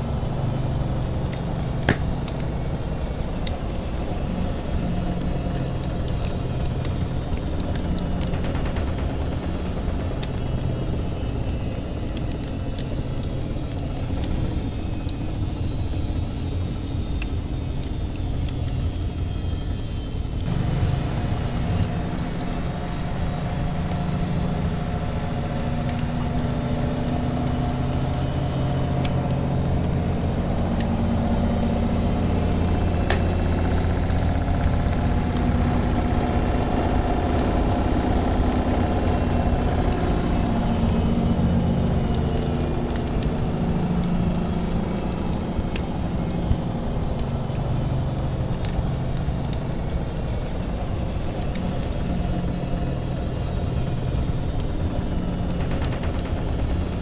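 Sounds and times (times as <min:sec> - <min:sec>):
washing machine humming: 0:00.0 - 0:57.0
wood fire crackling: 0:00.0 - 0:57.0.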